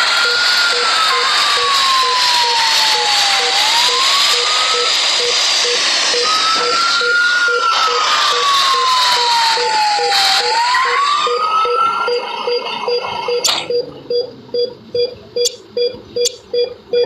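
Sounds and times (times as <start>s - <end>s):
ambulance siren wailing: 0.0s - 13.7s
steady beeping: 0.0s - 17.0s
sharp clicks: 13.4s - 13.8s.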